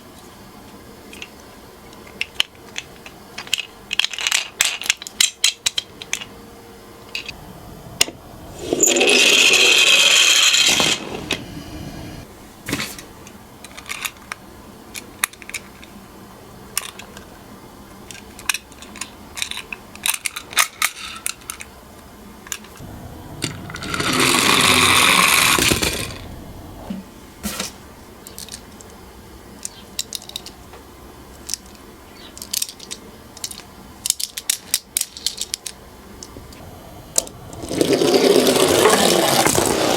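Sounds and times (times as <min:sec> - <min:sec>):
toy cars rattling down a slope: 0:08.6 - 0:11.4, 0:23.4 - 0:26.4, 0:32.4 - 0:35.8, 0:37.2 - 0:39.9
toys clicking when handled: 0:29.6 - 0:30.6, 0:31.3 - 0:36.4.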